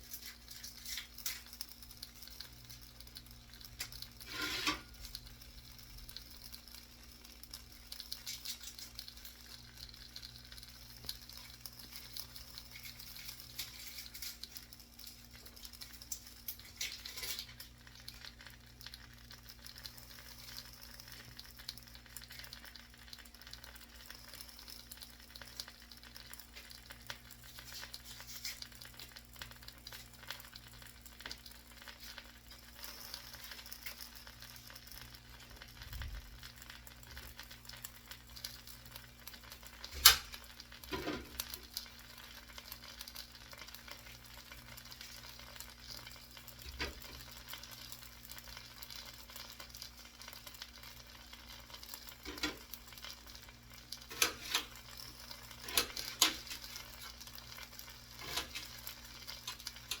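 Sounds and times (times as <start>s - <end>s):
food sizzling in a pan: 0.0s - 60.0s
utensil scraping a pan: 3.8s - 5.2s, 52.2s - 53.0s, 54.0s - 57.2s, 58.1s - 60.0s.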